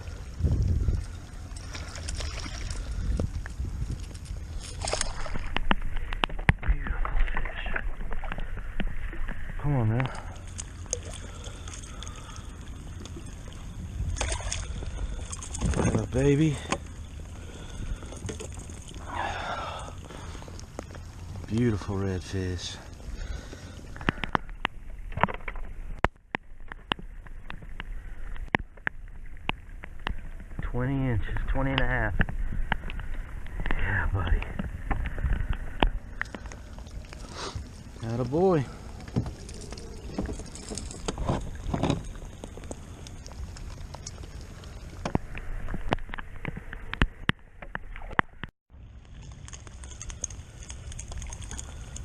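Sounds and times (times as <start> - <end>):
low wind rumble: 0.0 - 52.0.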